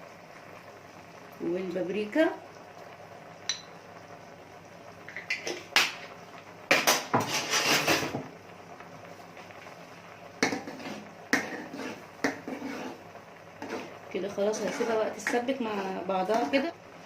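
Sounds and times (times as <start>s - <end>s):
utensils and pan clattering: 6.7s - 8.2s, 10.4s - 13.0s
scraping: 13.6s - 16.7s.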